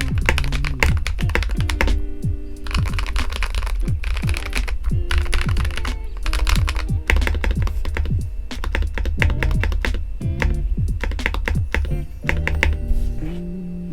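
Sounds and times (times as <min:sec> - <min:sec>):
bass-heavy background music: 0:00.0 - 0:13.9
mechanical keyboard typing: 0:02.6 - 0:12.8.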